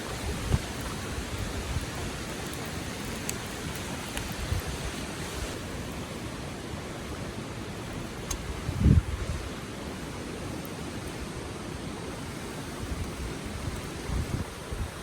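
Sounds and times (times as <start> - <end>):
wind buffeting microphone: 0.0 - 6.2, 7.8 - 11.1, 12.8 - 15.0
river flowing over stones: 0.0 - 15.0
faint clicks: 8.2 - 8.5.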